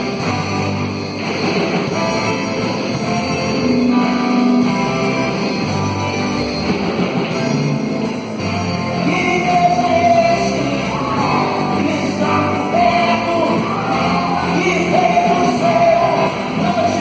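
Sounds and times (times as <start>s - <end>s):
rock band playing: 0.0s - 17.0s
person singing: 9.0s - 17.0s.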